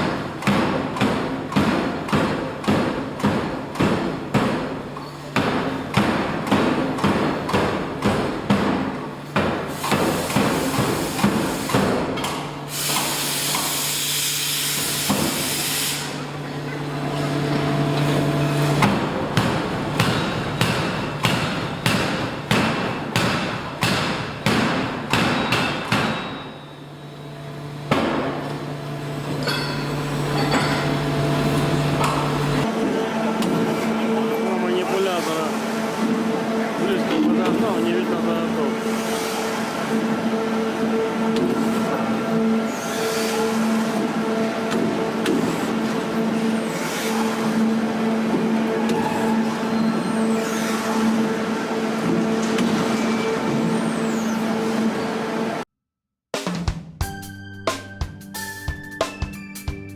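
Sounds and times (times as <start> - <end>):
loud hiss: 12.6 - 16.2
low machine hum: 16.2 - 25.6, 26.6 - 34.7
forging hammer pounding metal: 18.8 - 26.6.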